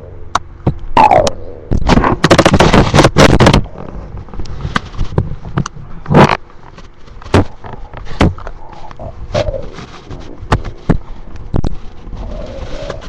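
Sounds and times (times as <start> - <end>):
stomach growling: 0.9 - 4.2, 7.3 - 13.0.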